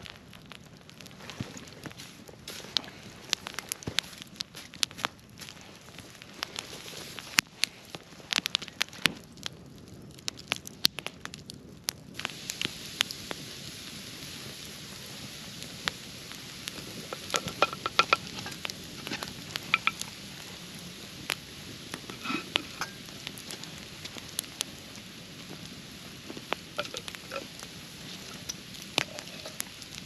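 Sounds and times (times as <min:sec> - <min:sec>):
sharp pops and crackles: 0:00.0 - 0:30.0
food sizzling on hot stone: 0:10.3 - 0:30.0.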